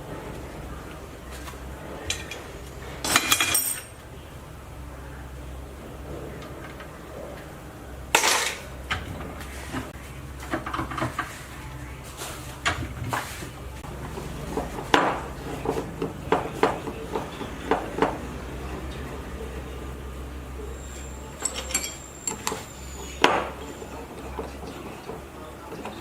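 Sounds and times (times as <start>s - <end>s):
steady low hum: 0.0s - 26.0s
metal tools clinking: 2.0s - 4.0s, 20.8s - 23.8s.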